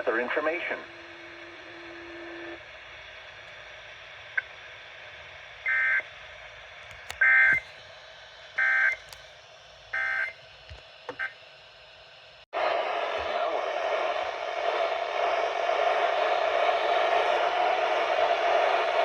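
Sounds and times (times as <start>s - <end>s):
radio hiss: 0.0s - 7.9s.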